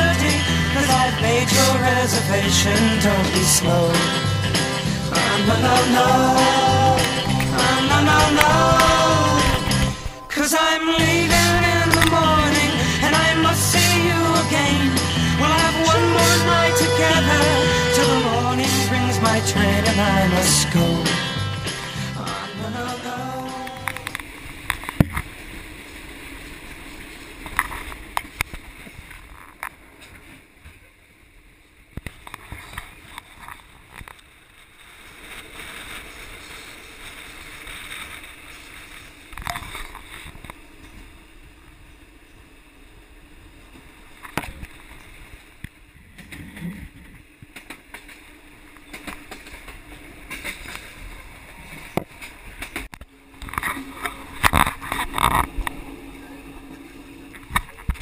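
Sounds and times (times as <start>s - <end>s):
train rumbling on track: 0.0s - 31.8s, 32.4s - 58.0s
train wheels knocking and clattering: 48.9s - 51.0s.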